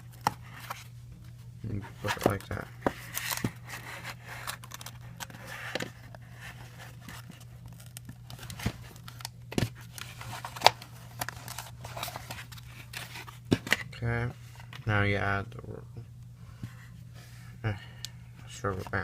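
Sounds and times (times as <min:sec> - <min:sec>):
cardboard scraping and rustling: 0:01.7 - 0:13.8.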